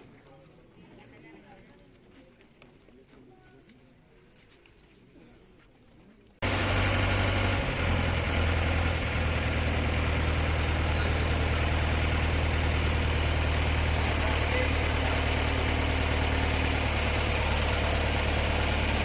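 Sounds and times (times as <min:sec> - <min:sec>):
engine idling: 0:06.4 - 0:19.0.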